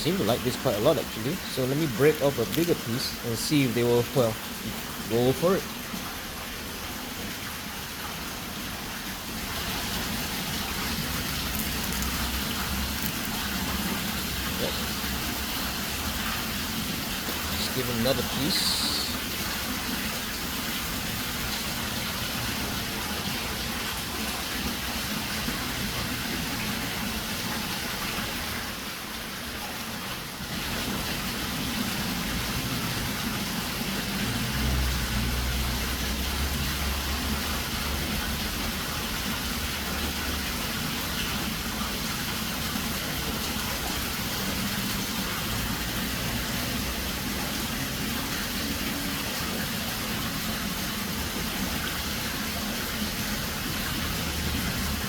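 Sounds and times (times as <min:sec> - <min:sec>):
rushing water: 0:00.0 - 0:55.0.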